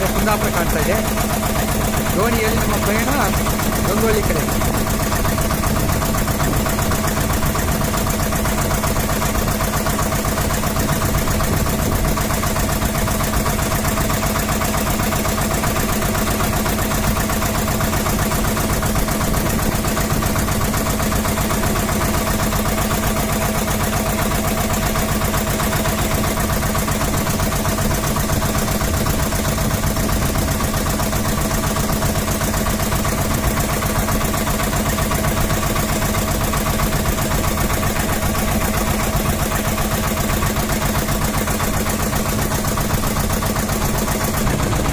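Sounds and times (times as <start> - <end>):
boat engine droning: 0.0 - 44.9.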